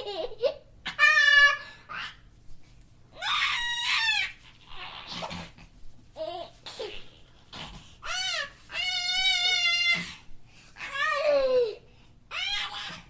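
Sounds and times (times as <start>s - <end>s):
young child squealing laughter: 0.0s - 2.0s.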